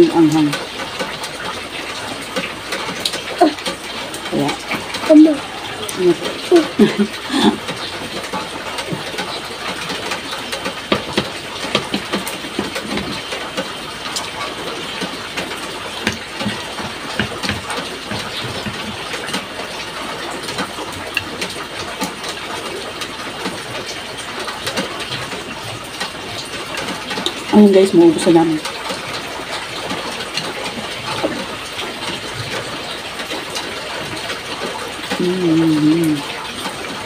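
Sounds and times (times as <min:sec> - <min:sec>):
utensils tapping on plates: 0:10.7 - 0:13.4, 0:16.0 - 0:19.4.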